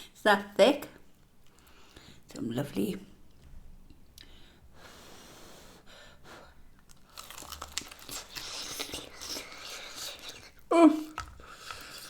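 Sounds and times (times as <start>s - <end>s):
crunching and chewing crispy food: 6.8s - 12.0s.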